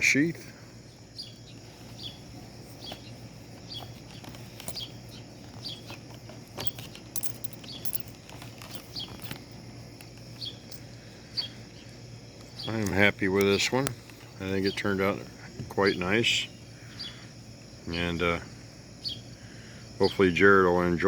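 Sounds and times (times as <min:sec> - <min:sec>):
bird chirping: 0:00.0 - 0:20.2
steady low hum: 0:00.0 - 0:21.0.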